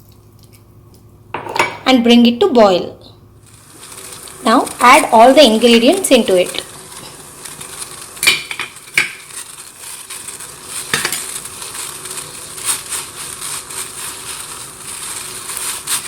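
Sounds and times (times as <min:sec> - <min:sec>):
water boiling in a pan: 0:03.3 - 0:16.0.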